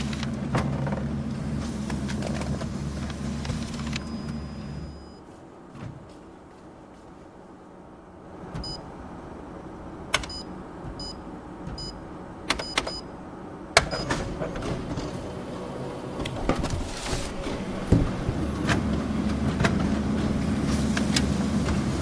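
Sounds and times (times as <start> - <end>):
printer motor hum: 8.3 - 22.0
sharp mechanical clicks: 10.1 - 10.5, 12.5 - 13.0
loud printer clack: 13.8 - 22.0.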